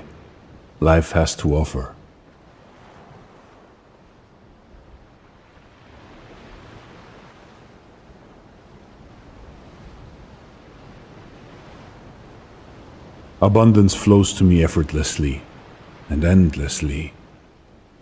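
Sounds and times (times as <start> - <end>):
faint ocean waves washing: 0.0 - 18.0.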